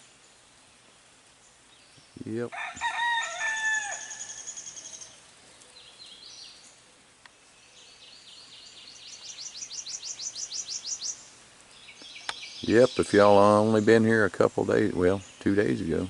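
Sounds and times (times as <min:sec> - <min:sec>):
small birds singing: 0:00.0 - 0:16.0
rooster crowing: 0:02.5 - 0:05.0.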